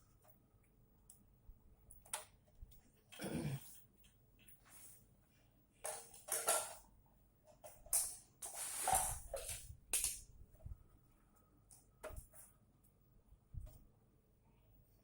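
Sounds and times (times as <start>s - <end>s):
short scraping and rustling: 8.4s - 9.7s.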